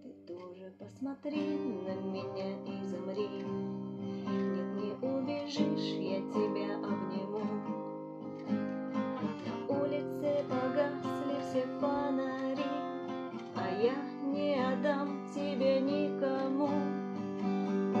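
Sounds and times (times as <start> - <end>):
strummed acoustic guitar: 0.9 - 18.0
wordless singing: 9.4 - 12.9.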